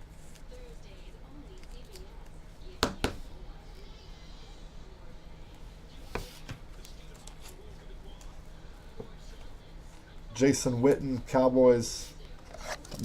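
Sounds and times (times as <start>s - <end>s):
faint background voices: 0.4s - 10.6s.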